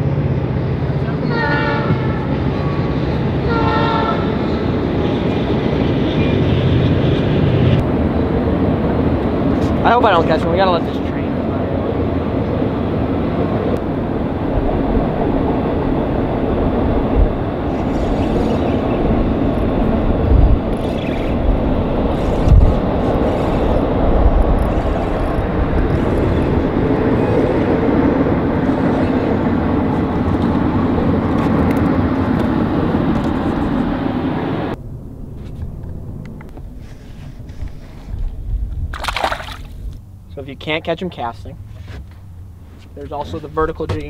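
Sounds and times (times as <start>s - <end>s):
train rumbling past: 0.0s - 20.7s, 21.4s - 38.7s.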